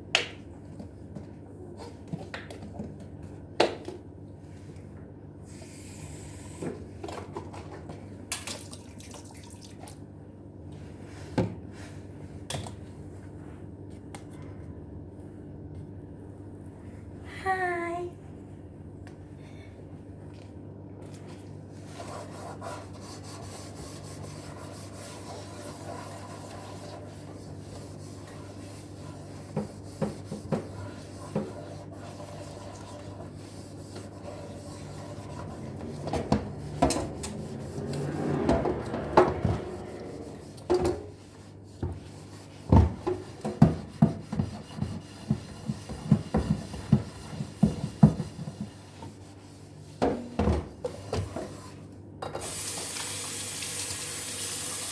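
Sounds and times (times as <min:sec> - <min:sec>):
dishes scrubbed by hand: 0:21.7 - 0:50.0.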